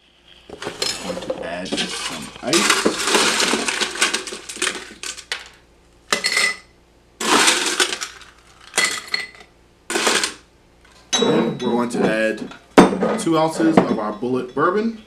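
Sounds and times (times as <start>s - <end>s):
ice cubes clattering and clinking: 0.6s - 6.6s, 7.2s - 10.4s.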